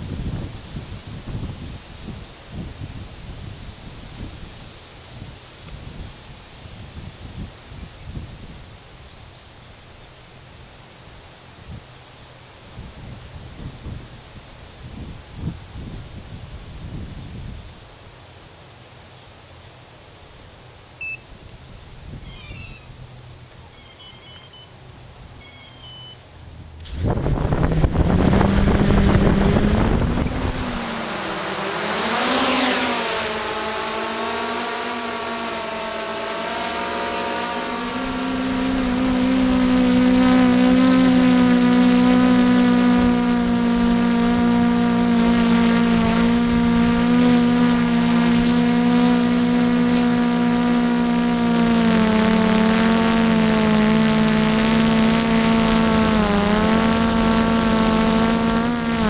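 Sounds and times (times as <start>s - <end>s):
multirotor drone hum: 22.1s - 59.0s.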